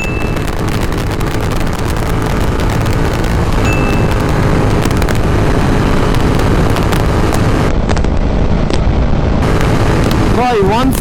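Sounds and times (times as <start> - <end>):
motorcycle engine pulling hard: 0.0 - 7.8
exhaust cracks and pops: 0.0 - 11.0
wind rush on microphone: 0.0 - 11.0.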